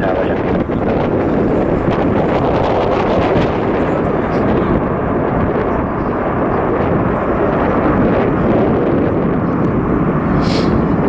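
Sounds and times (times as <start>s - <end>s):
jet engines roaring: 0.0s - 11.0s.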